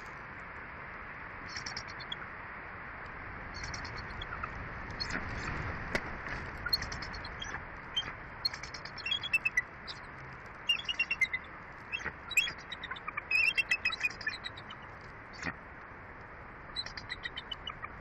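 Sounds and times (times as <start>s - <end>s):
eagle chirping and squealing: 3.6s - 5.5s, 6.6s - 15.5s, 16.7s - 18.0s.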